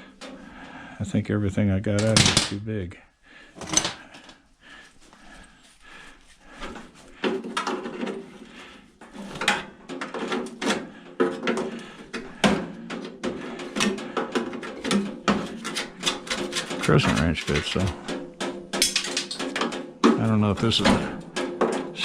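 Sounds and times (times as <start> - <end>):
metal tools clinking: 14.7 - 18.2, 18.8 - 21.0.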